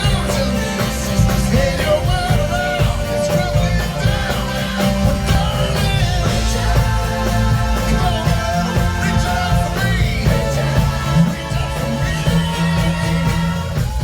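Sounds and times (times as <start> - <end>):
heavy boomy bass: 0.0 - 14.0
live band playing: 0.0 - 14.0
vocal group singing: 0.0 - 14.0.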